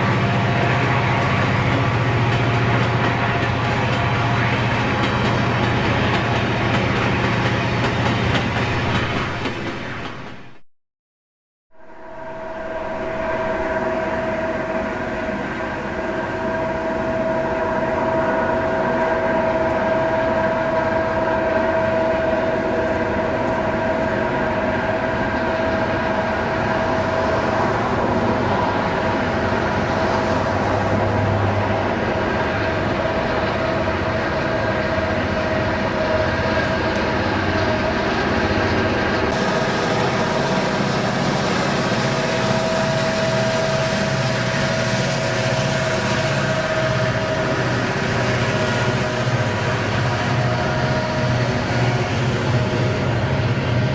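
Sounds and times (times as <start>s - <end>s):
locomotive engine drone: 0.0s - 10.6s, 11.7s - 53.9s
high whine: 11.7s - 31.7s.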